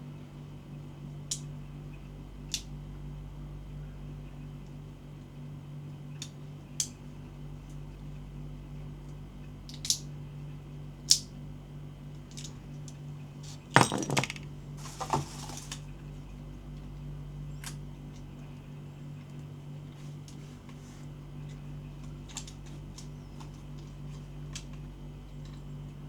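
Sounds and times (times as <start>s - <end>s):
steady low hum: 0.0s - 26.0s
clattering rattle: 13.7s - 15.7s
packaging rustle: 14.8s - 15.9s.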